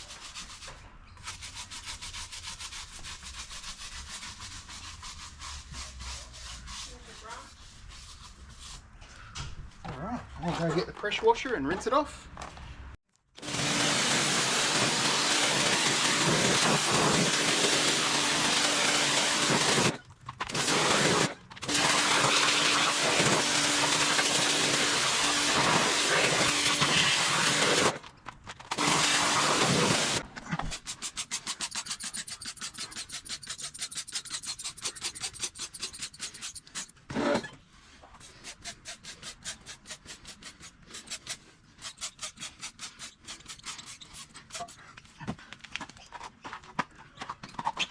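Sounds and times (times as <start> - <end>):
pressure washer spraying water: 13.4 - 19.9, 20.6 - 27.9, 28.8 - 30.2
rapid rhythmic scratching: 29.4 - 36.9.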